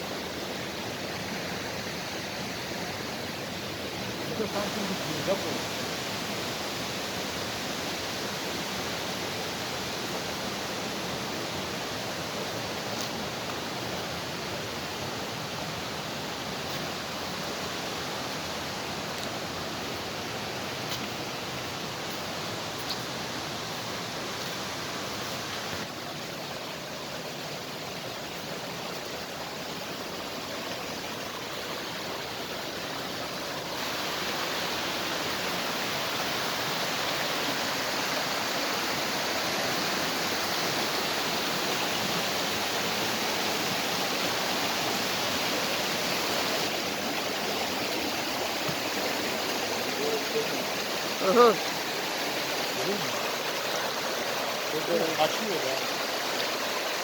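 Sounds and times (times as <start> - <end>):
water rushing over rocks: 0.0 - 57.0.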